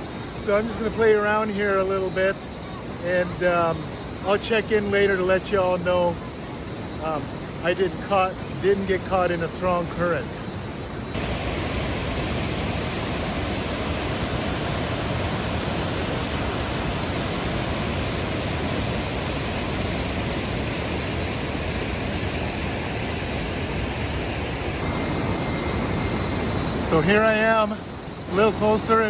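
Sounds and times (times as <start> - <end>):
water rushing over cascades: 11.2 - 27.5.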